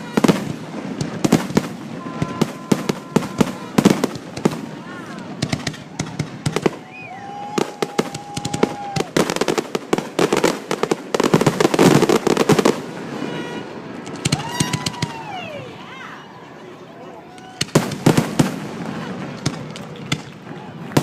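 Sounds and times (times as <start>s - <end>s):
fireworks bangs and crackles: 0.0s - 15.8s, 17.3s - 21.0s.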